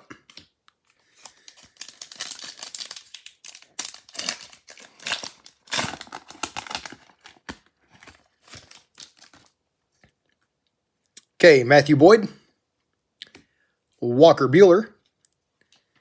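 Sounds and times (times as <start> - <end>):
wrapper tearing and crinkling: 1.0 - 9.6.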